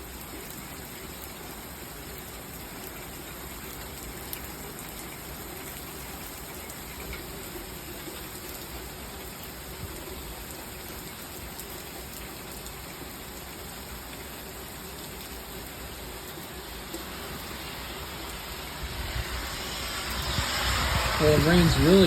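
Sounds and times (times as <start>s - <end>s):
heavy rain pouring: 0.0s - 22.0s.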